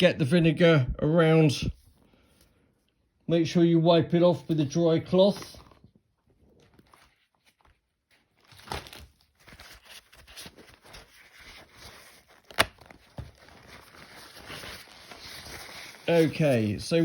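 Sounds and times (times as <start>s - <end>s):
cloth crinkling and rustling: 4.3s - 17.0s.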